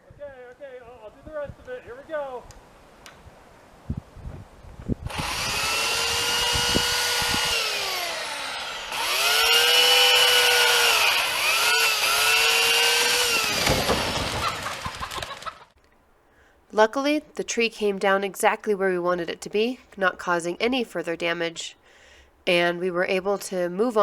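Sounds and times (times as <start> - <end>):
chainsaw cutting tree trunk: 5.0 - 15.5.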